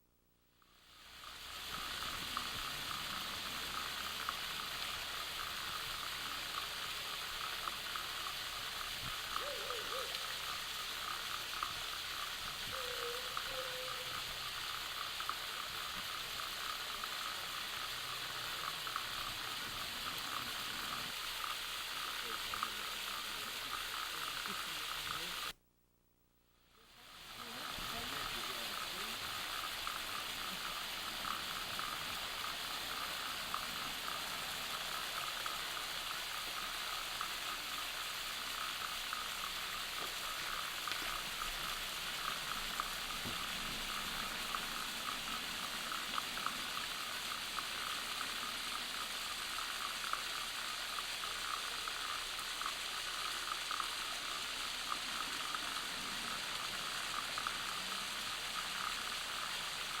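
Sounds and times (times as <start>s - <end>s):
animals chirping: 9.3s - 10.4s, 12.7s - 14.2s.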